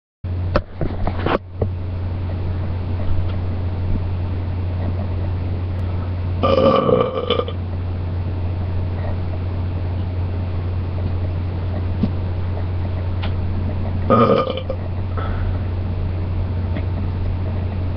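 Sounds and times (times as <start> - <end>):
steady low hum: 0.3 - 17.9
person belching: 6.4 - 7.6, 14.1 - 14.8.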